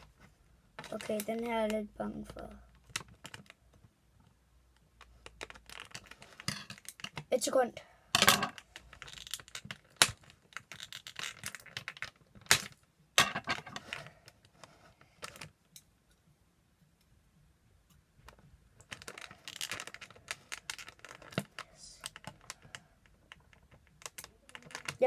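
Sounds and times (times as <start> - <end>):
plastic packaging crackling: 8.6 - 12.7, 18.3 - 25.0.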